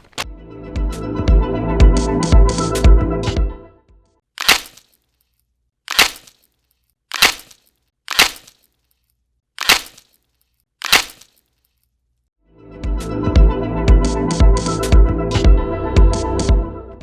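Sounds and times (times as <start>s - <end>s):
sharp cracks: 4.4s - 5.1s, 5.9s - 8.8s, 9.6s - 11.5s.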